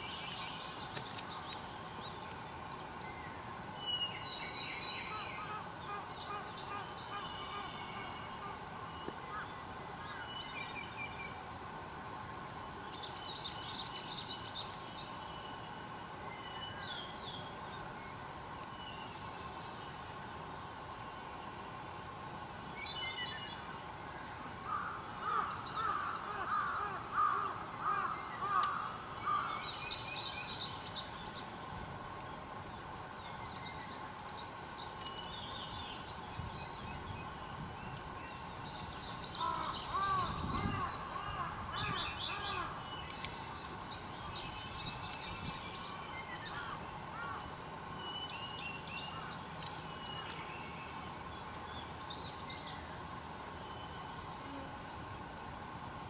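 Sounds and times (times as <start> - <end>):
high thin bird songs and chirps: 41.8 - 52.9.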